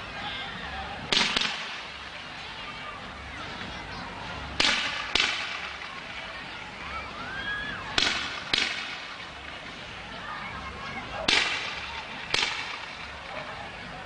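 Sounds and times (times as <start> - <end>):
fireworks bursting: 1.1 - 2.2, 7.9 - 9.5, 11.3 - 13.2
fireworks crackle: 1.1 - 2.5, 7.9 - 10.0, 11.3 - 13.2.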